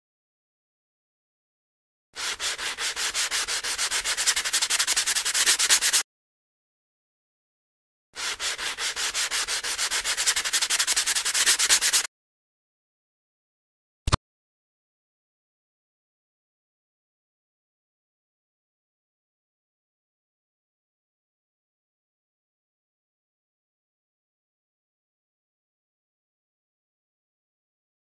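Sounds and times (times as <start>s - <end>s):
hand sanding strokes: 2.2s - 6.0s, 8.2s - 12.1s.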